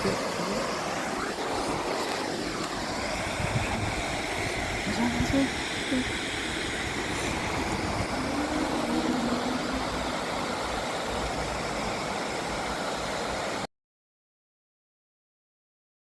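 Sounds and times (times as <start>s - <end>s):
water rushing over weir: 0.0s - 13.7s.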